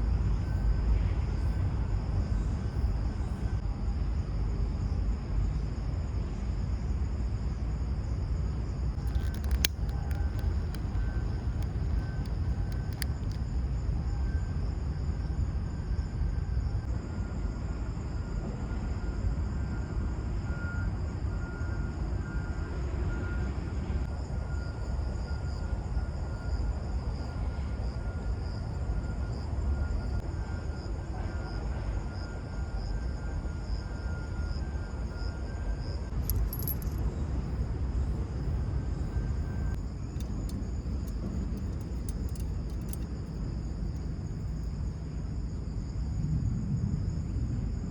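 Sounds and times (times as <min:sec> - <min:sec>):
insects chirring: 0:09.0 - 0:13.6, 0:35.1 - 0:46.2.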